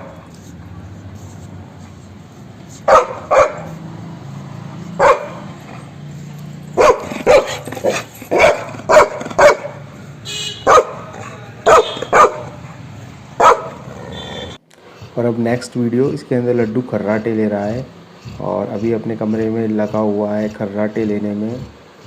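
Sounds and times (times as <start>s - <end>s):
dog barking sharply: 2.8s - 3.7s, 5.0s - 5.5s, 6.8s - 9.8s, 10.6s - 12.6s, 13.4s - 14.3s.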